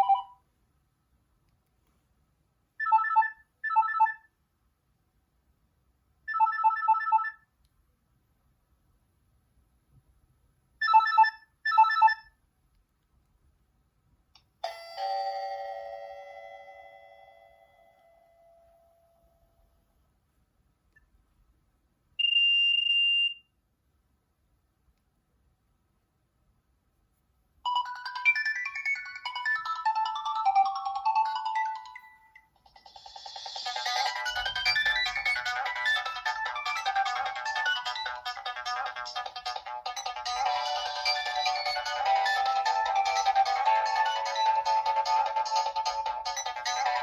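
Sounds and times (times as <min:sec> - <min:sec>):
electronic beeping ringtone: 0:00.0 - 0:00.4, 0:02.8 - 0:04.3, 0:27.7 - 0:47.0
bell-like chime: 0:14.6 - 0:19.4.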